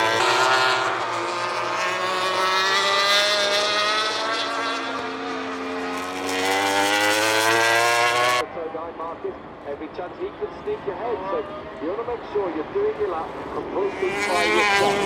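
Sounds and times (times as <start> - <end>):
racing motorcycle engines revving: 0.0 - 8.5, 11.7 - 15.0.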